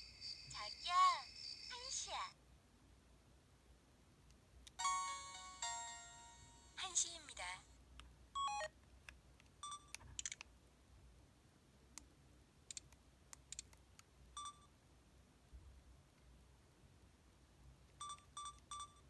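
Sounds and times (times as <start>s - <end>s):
mobile phone beeps and key tones: 8.4s - 8.7s, 9.6s - 10.4s, 14.4s - 14.7s, 18.0s - 19.0s.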